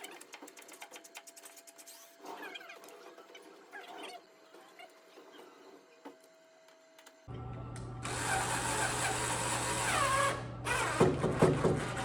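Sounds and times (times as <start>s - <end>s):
small motor running: 8.0s - 12.0s.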